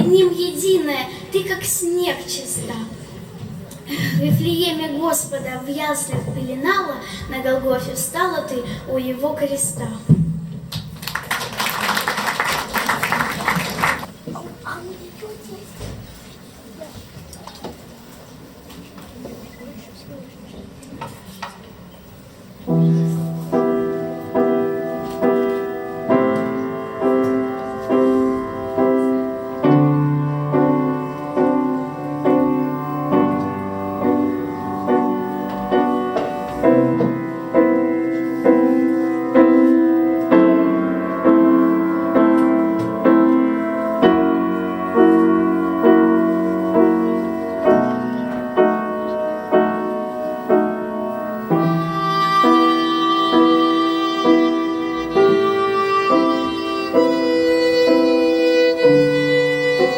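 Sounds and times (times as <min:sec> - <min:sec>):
piano playing slow chords: 0:22.6 - 0:59.9.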